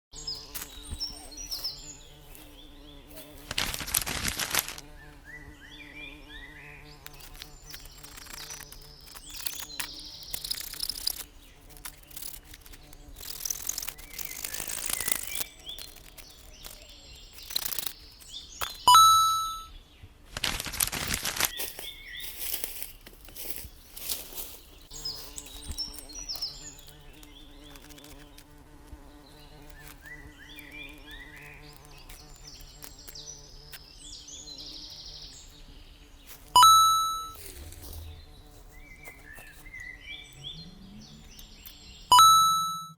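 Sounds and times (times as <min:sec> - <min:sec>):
birds chirping: 0:00.1 - 0:42.9
loud rustling or scraping: 0:03.1 - 0:04.8, 0:07.1 - 0:18.3, 0:20.3 - 0:28.5, 0:37.4 - 0:39.7
bell-like ding: 0:18.9 - 0:19.7, 0:36.6 - 0:37.4, 0:42.1 - 0:42.9.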